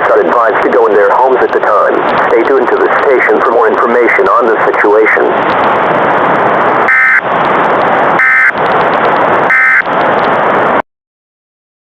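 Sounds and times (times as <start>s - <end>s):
radio static: 0.0s - 10.2s
warbling digital data tones: 6.9s - 7.3s, 8.2s - 8.6s, 9.5s - 9.9s.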